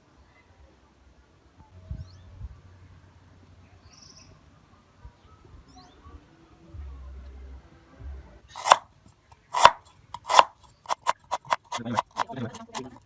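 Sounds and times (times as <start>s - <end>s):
knife chopping on cutting board: 8.6s - 8.8s, 9.4s - 13.0s.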